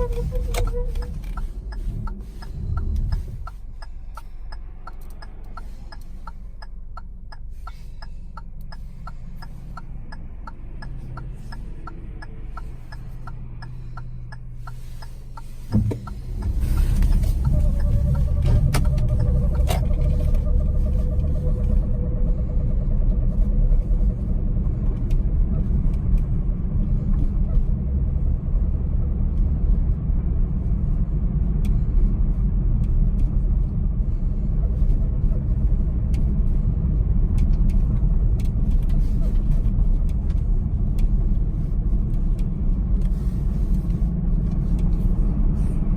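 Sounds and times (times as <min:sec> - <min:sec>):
vehicle road rumble: 0:00.0 - 0:45.9.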